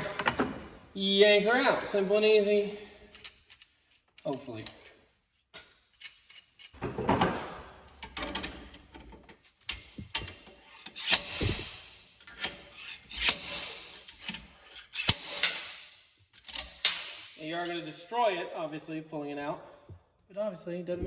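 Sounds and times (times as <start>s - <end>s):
slide hammer metal clanks: 7.9s - 17.8s.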